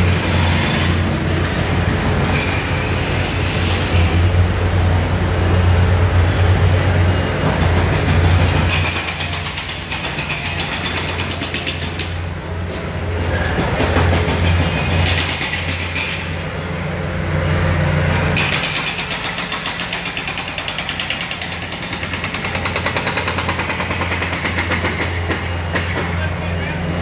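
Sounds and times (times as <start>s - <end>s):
low machinery drone: 0.0s - 9.7s, 10.4s - 20.2s, 20.9s - 27.0s
rapid rattling or hammering: 18.4s - 26.2s.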